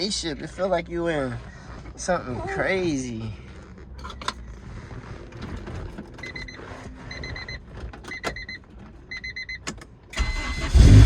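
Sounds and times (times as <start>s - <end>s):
car engine cranking and starting: 1.0s - 11.0s
car warning chime beeping: 6.2s - 10.7s.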